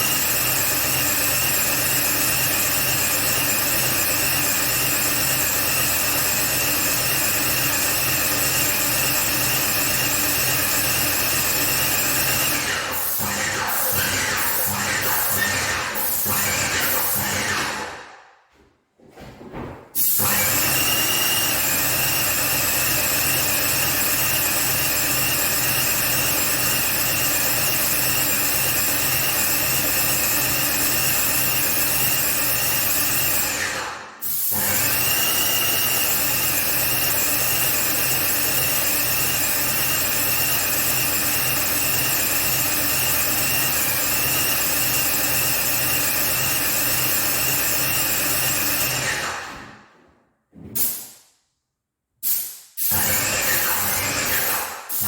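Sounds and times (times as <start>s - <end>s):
power tool motor running: 20.2s - 23.5s, 52.9s - 55.0s.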